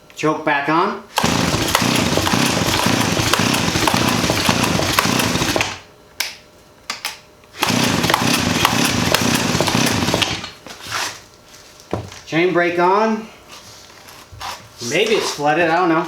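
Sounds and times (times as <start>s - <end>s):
chainsaw engine running roughly: 1.2s - 5.9s, 7.6s - 10.6s.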